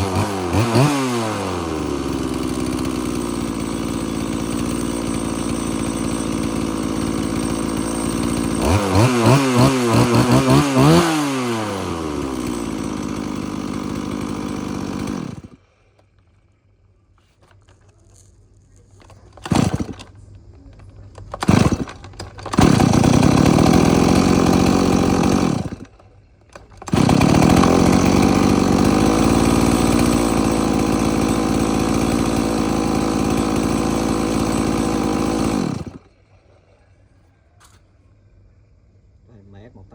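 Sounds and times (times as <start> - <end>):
chainsaw idling and revving: 0.0 - 15.6, 19.3 - 20.1, 21.3 - 36.1
chainsaw starter cord pulls: 0.0 - 16.1, 17.4 - 36.1.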